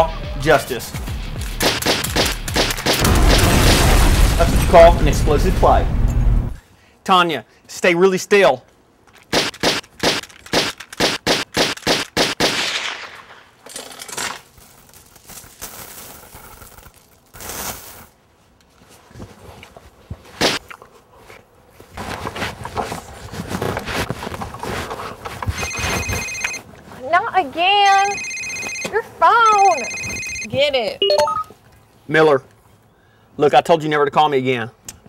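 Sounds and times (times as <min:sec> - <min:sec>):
rapid gunshots: 0:01.6 - 0:05.0, 0:09.3 - 0:13.3
scuffling noise: 0:14.6 - 0:27.4.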